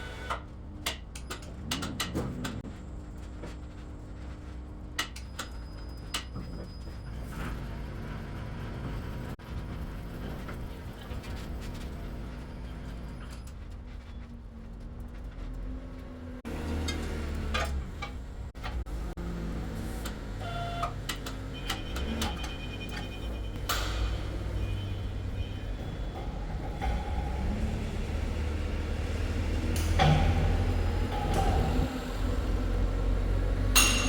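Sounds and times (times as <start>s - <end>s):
clanks and clicks: 0.2s - 2.7s, 10.2s - 19.3s, 20.0s - 34.0s
crane diesel engine running: 15.3s - 34.0s.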